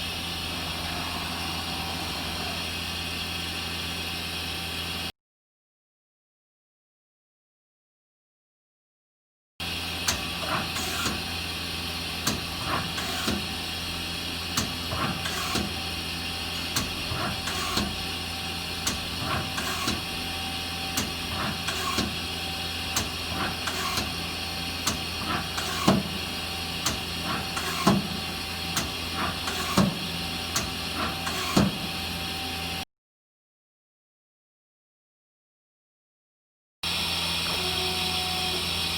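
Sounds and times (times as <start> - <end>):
lathe humming and whining: 0.0 - 5.1, 9.6 - 32.8, 36.9 - 38.9.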